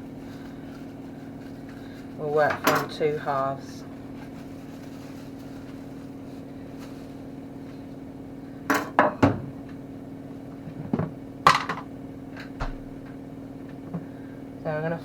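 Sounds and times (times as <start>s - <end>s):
utensils clattering on worktop: 2.4s - 3.0s.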